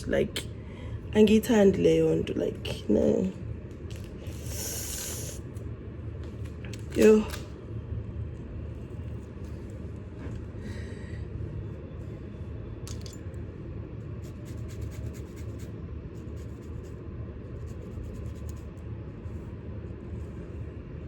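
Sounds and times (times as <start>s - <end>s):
steady low rumble: 0.0s - 21.0s.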